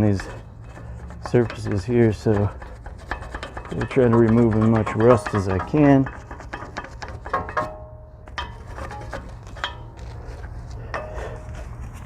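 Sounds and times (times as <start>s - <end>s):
wire brush scraping metal: 0.0s - 12.0s
metal clinking ring: 7.4s - 10.0s.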